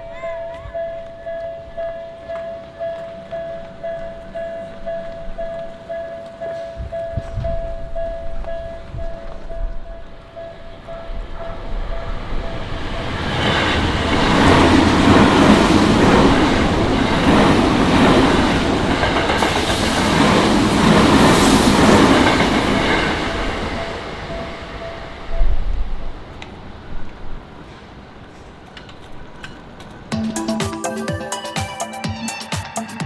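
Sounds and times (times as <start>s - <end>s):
crossing warning bell dinging: 0.0s - 26.1s
train wheels clattering over rail joints: 11.4s - 23.8s.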